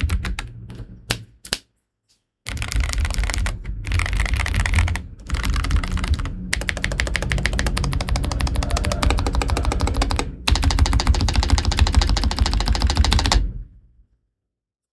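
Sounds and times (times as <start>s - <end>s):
fast typing on mechanical keyboard: 2.5s - 13.5s.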